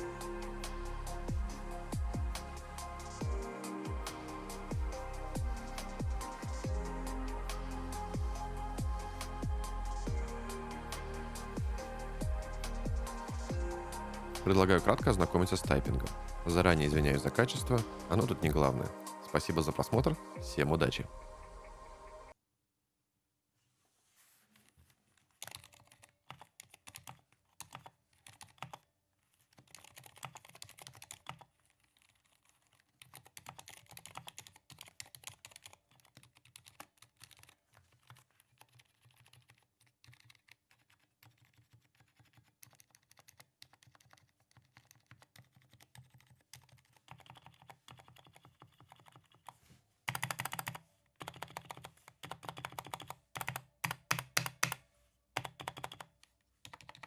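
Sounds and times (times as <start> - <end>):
soft mechanical keyboard typing: 25.3 - 54.8, 55.4 - 57.0.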